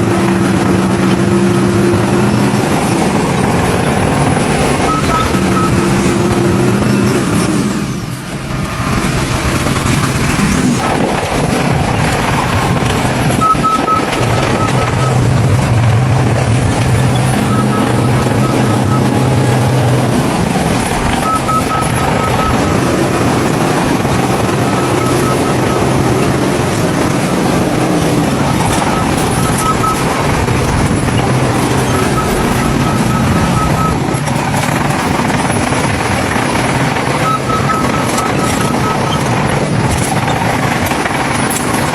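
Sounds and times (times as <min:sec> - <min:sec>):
heavy diesel machinery running: 0:00.0 - 0:41.9
short high beeps: 0:04.6 - 0:07.2, 0:13.4 - 0:15.3, 0:16.9 - 0:19.5, 0:21.2 - 0:36.2, 0:37.1 - 0:39.4.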